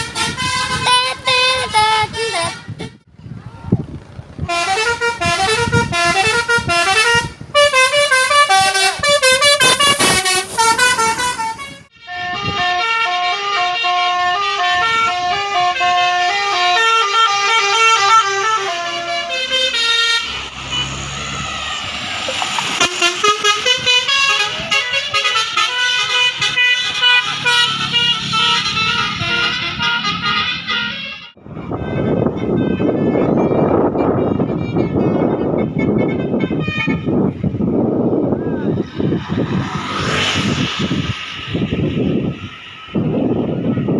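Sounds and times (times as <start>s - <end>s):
air horns playing tunes: 0.0s - 3.0s, 4.4s - 21.0s, 22.2s - 37.4s.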